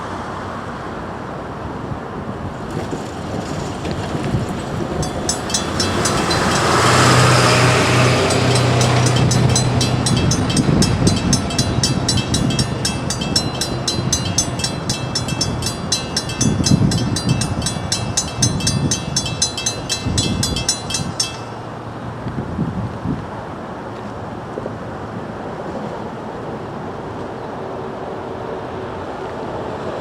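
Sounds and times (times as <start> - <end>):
passing train rumble: 0.0 - 22.6
railroad crossing bells ringing: 4.8 - 21.9.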